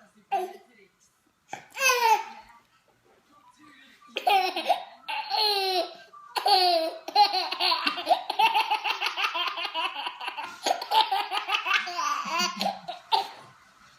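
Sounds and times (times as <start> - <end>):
baby laughing: 1.6 - 2.4, 4.2 - 13.4.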